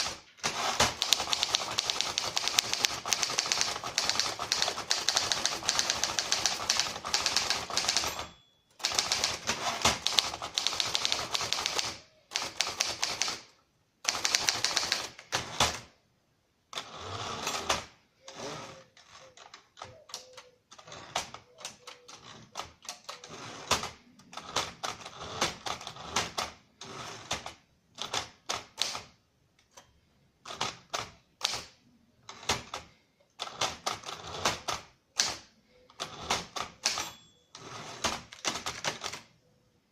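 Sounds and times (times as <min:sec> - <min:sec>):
typewriter key strikes: 0:00.8 - 0:13.4.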